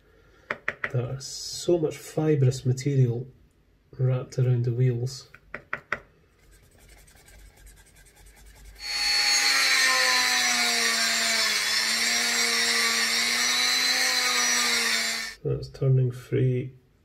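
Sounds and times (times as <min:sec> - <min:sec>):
handheld power tool whining: 0:08.8 - 0:15.4.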